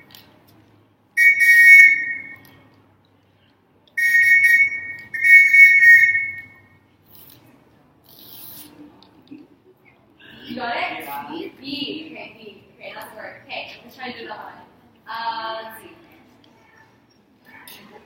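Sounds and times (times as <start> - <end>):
signal whistle long blasts: 1.2 - 2.5, 4.0 - 6.7.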